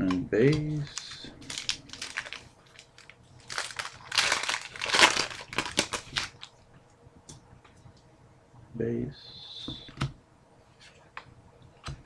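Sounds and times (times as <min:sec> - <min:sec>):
cards and packaging crinkling: 0:00.0 - 0:06.5.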